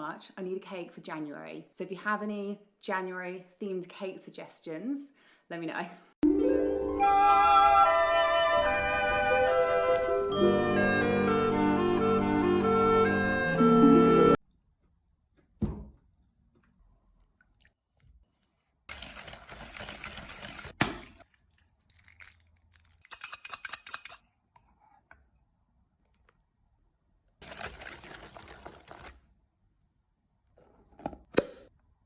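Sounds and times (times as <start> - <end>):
rustling or crinkling: 17.9 - 23.0, 27.4 - 29.2.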